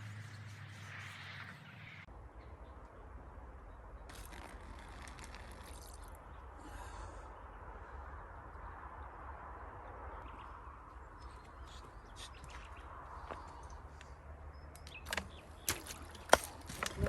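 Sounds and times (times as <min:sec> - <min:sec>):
waterfall trickling: 0:04.1 - 0:06.2.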